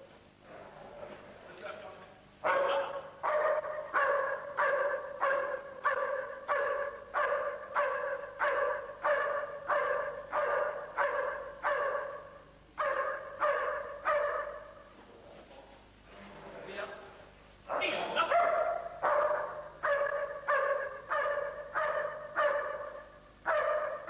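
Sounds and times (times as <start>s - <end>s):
dog barking: 2.4s - 14.9s, 17.7s - 24.0s.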